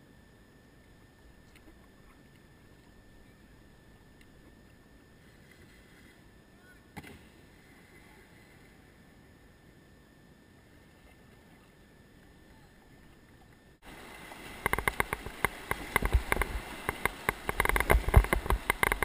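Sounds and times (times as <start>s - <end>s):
faint steady hiss: 0.0s - 19.0s.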